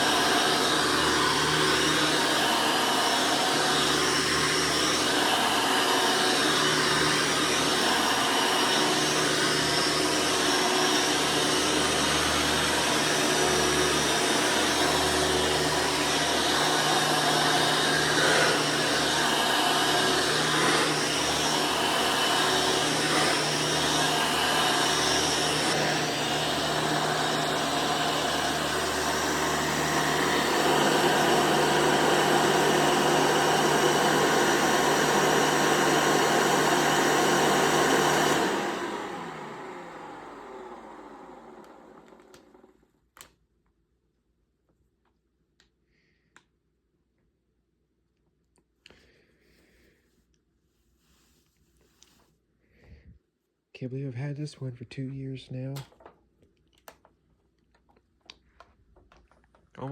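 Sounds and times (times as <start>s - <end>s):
vacuum cleaner running: 0.0s - 42.9s
vacuum motor winding down: 0.0s - 42.9s.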